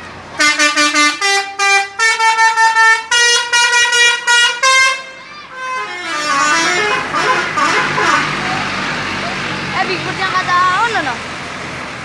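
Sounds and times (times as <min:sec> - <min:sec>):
multi-tone air horn melody: 0:00.4 - 0:08.8
falling tone: 0:05.2 - 0:11.2
jumble of voices: 0:08.2 - 0:11.2.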